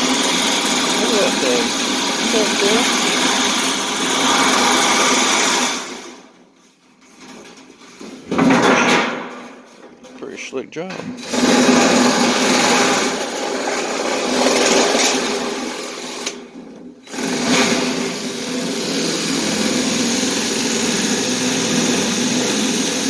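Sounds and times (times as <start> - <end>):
power cutting tool running: 0.0 - 6.0, 17.1 - 23.0.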